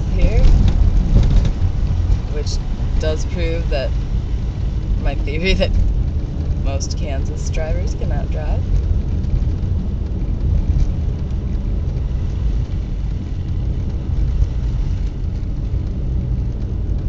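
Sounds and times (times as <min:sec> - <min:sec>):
car cabin road rumble: 0:00.0 - 0:17.0.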